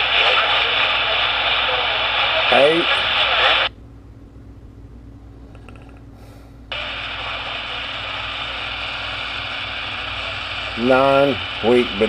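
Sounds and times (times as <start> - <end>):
radio static hiss: 0.0 - 3.7, 6.7 - 12.0
low radio hum: 0.0 - 12.0.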